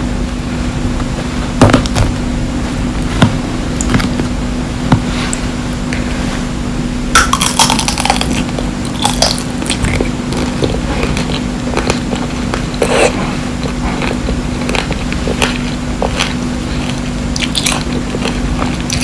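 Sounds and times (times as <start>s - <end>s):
steady low hum: 0.0s - 19.0s
crunching hard candy: 7.2s - 19.0s.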